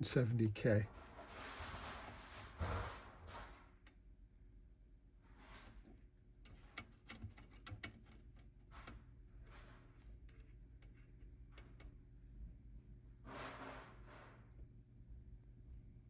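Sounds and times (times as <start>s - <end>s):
probes clicking and tapping: 5.6s - 12.2s.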